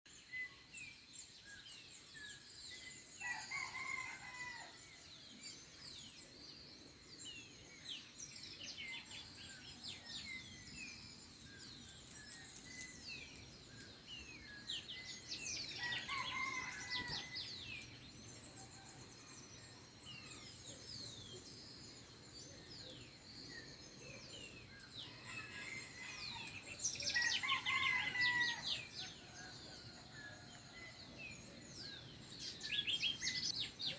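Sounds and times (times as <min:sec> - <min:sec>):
small birds chirping: 0:00.1 - 0:33.9
rooster crowing: 0:15.8 - 0:17.4, 0:27.1 - 0:28.8.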